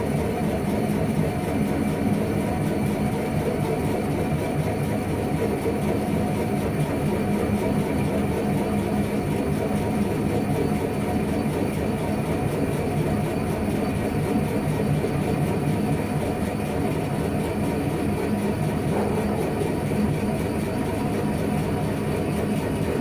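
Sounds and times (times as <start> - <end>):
lathe running: 5.9 - 23.0.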